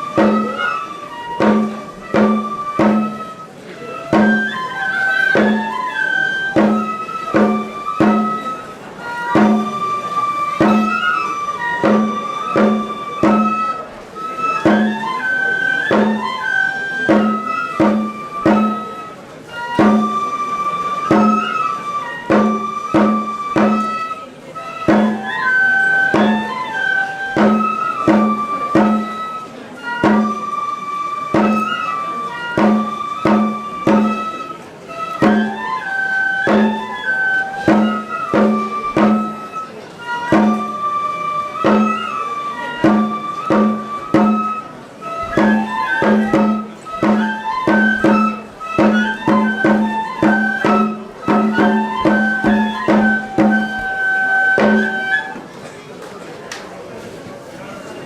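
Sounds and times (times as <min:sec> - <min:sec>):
flute playing held notes: 0:00.0 - 0:55.4
steady drum strikes: 0:00.2 - 0:00.6, 0:01.4 - 0:03.3, 0:06.5 - 0:08.5, 0:09.1 - 0:09.7, 0:10.6 - 0:13.7, 0:15.8 - 0:18.8, 0:19.5 - 0:20.2, 0:21.0 - 0:24.1, 0:24.8 - 0:29.3, 0:29.9 - 0:30.4, 0:31.4 - 0:31.8, 0:32.6 - 0:34.3, 0:35.2 - 0:35.7, 0:37.6 - 0:39.4, 0:40.2 - 0:40.7, 0:41.5 - 0:42.1, 0:42.9 - 0:44.6, 0:45.4 - 0:53.7.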